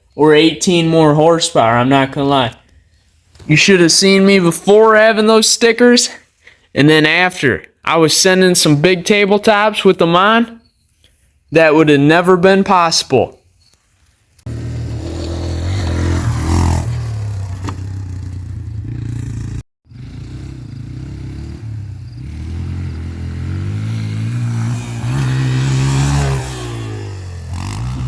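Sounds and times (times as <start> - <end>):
dirt bike engine running: 14.5 - 28.0.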